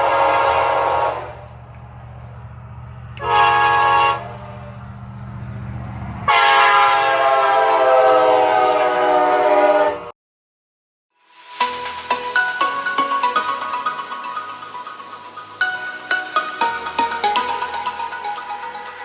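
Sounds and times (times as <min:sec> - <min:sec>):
train horn blasts: 0:00.0 - 0:01.6, 0:03.2 - 0:04.6, 0:06.3 - 0:10.1
mallet percussion music: 0:11.4 - 0:19.0.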